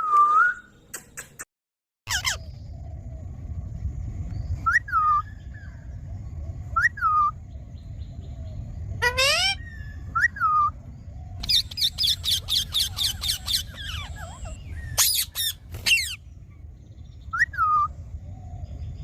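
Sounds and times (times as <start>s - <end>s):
parrot calling: 2.1s - 2.5s, 9.0s - 10.4s, 11.4s - 16.2s.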